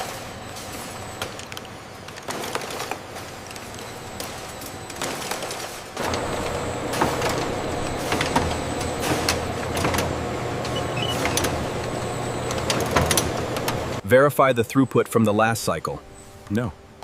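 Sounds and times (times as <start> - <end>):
machinery hum: 0.0 - 14.0.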